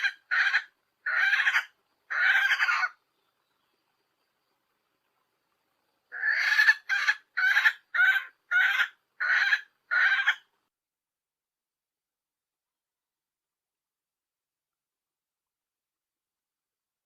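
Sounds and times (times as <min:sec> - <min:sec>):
hen calling: 0:00.0 - 0:03.0, 0:06.1 - 0:10.5.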